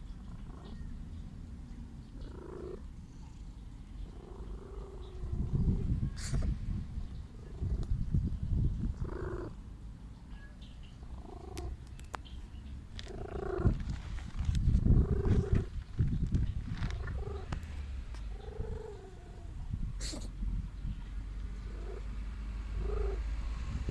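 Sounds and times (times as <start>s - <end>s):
cat purring: 2.1s - 9.6s, 11.1s - 11.8s, 13.0s - 21.0s, 21.6s - 22.2s, 22.8s - 23.9s
cat mewing: 18.3s - 21.0s, 22.8s - 23.2s.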